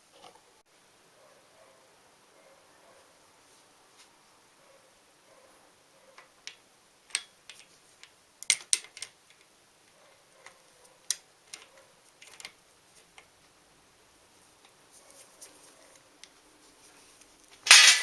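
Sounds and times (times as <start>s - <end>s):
tools clicking and tapping: 6.2s - 9.5s, 10.4s - 13.3s, 17.6s - 18.0s.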